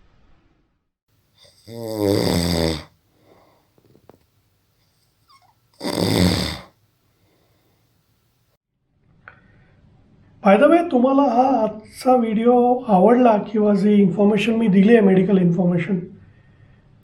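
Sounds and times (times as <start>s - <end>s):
person snoring: 1.4s - 4.2s, 4.9s - 7.6s.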